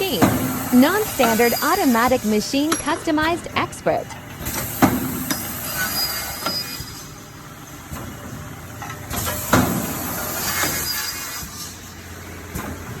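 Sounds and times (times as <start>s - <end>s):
loud machine clunk: 7.9s - 11.6s.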